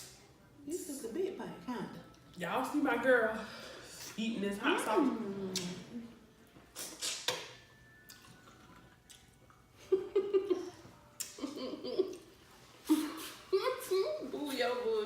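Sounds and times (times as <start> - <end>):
people chewing and smacking: 5.5 - 13.4.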